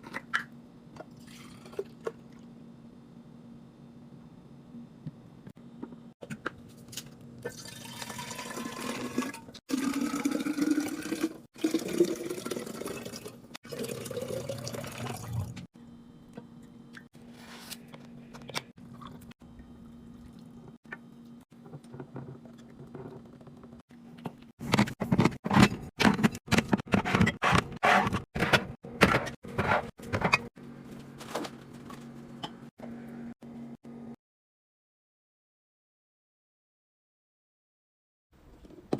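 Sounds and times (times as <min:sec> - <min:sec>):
liquid pouring into container: 0:07.5 - 0:15.6.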